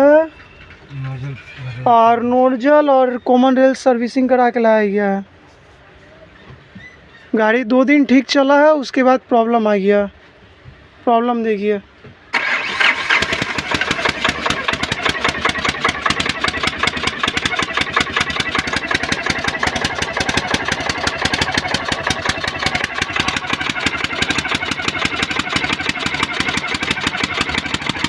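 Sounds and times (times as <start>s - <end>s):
diesel engine knocking clatter: 12.6s - 28.0s.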